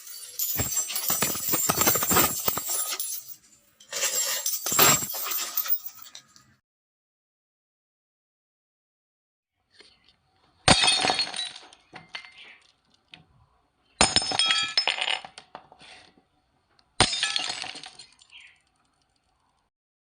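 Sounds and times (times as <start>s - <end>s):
glass shattering: 0.0s - 6.3s, 10.7s - 12.6s, 14.0s - 15.4s, 17.0s - 18.5s.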